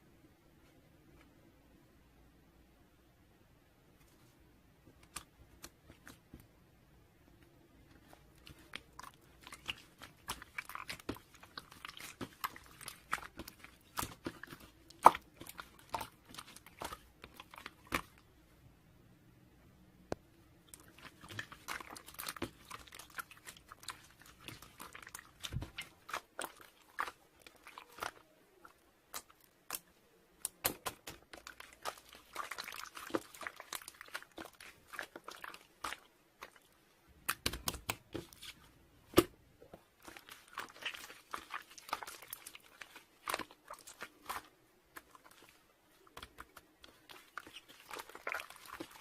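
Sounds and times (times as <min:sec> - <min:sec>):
crunching and crinkling: 0:07.9 - 0:18.2, 0:20.7 - 0:49.0.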